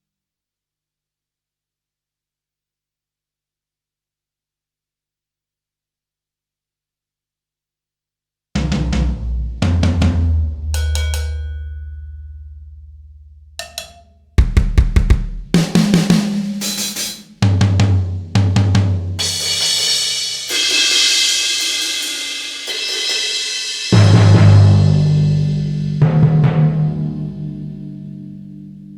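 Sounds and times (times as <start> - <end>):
deep drum strike: 8.6 - 11.5, 14.4 - 16.6
kick snare and tom hits: 13.6 - 17.6
cymbal wash: 19.2 - 28.8.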